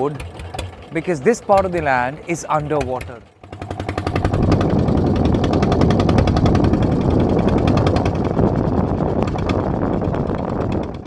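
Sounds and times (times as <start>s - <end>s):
boat engine chugging: 0.0s - 11.0s.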